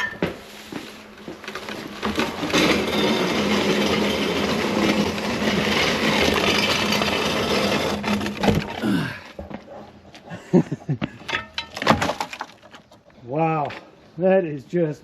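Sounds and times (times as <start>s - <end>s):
metal plate scraping on ground: 1.6s - 9.0s.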